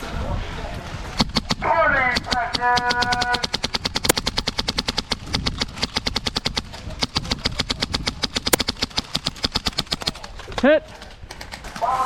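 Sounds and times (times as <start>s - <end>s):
airsoft guns firing full auto: 1.2s - 10.4s.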